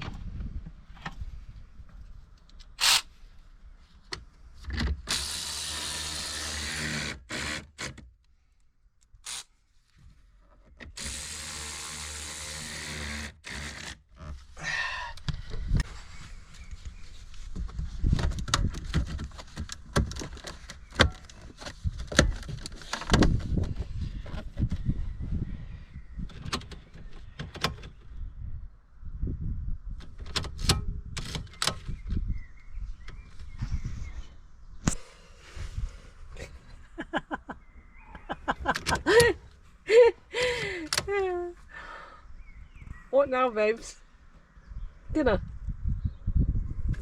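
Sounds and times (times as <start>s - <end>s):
small electric motor whining: 11.0s - 14.0s.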